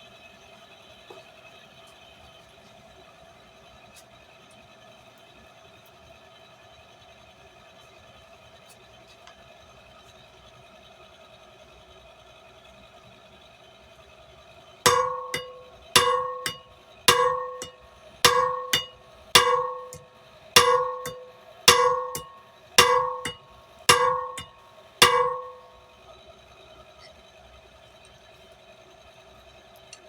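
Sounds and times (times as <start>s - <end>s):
hammer striking anvil: 14.9s - 25.8s.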